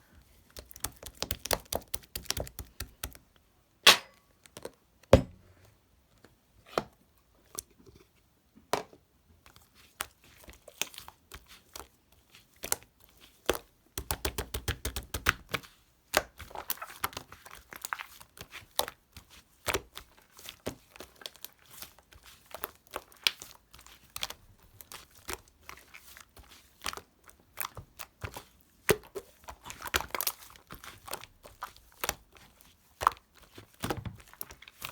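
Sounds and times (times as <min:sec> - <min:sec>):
slime squishing: 0:00.4 - 0:03.2, 0:09.7 - 0:34.9.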